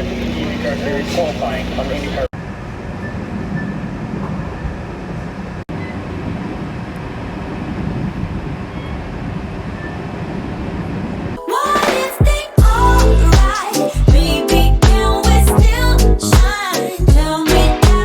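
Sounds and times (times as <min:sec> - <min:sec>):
moving train rumble: 0:00.0 - 0:13.3
music: 0:11.4 - 0:18.0.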